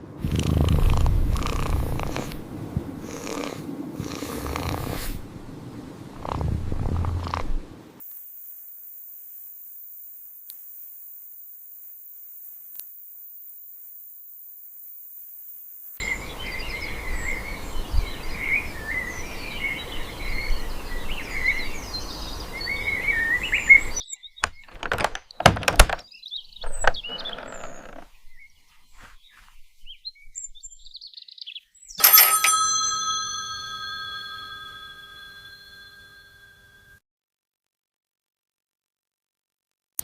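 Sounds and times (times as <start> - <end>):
steady outdoor hiss: 0.0 - 24.0
birds chirping: 16.0 - 36.9
ringing chime: 32.0 - 37.0.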